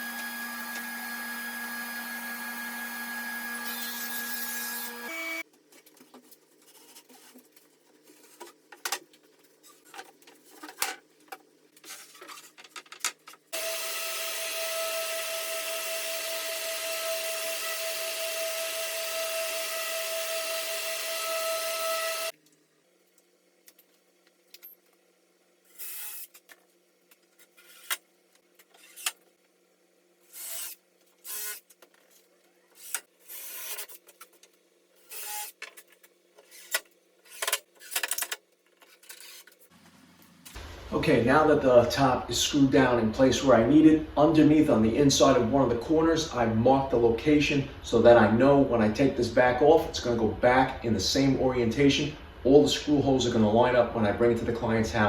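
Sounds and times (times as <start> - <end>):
power tool whining: 0.0 - 5.4, 13.6 - 22.3.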